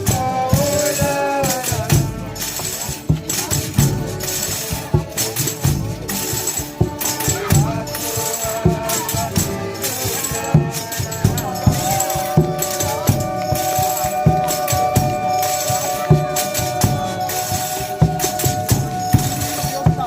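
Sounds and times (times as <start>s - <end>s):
tambourine and rattles shaking: 0.0s - 20.0s
long held notes: 4.0s - 20.0s.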